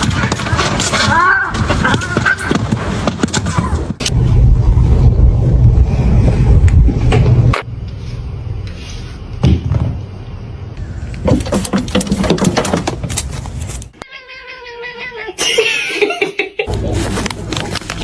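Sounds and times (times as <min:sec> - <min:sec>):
cat meowing and yowling: 0:14.0 - 0:15.4.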